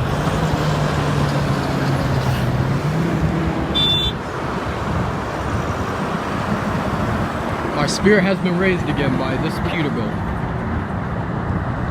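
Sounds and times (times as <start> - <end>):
traffic rushing past: 0.0 - 11.9
truck engine drone: 0.0 - 11.9.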